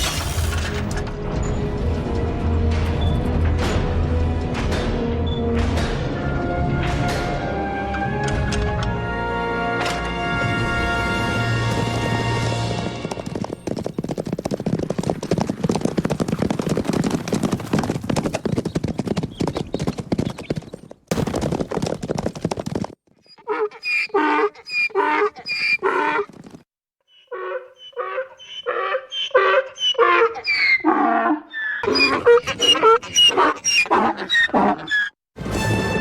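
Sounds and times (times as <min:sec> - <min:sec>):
dense clattering: 0:00.0 - 0:06.3
quick repeated animal cries: 0:23.2 - 0:26.4, 0:27.1 - 0:35.2.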